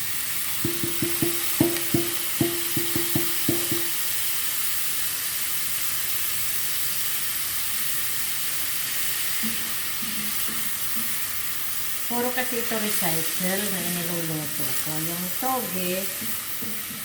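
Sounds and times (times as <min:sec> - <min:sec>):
food sizzling in a frying pan: 0:00.0 - 0:17.0
utensil tapping a pan: 0:00.6 - 0:04.1.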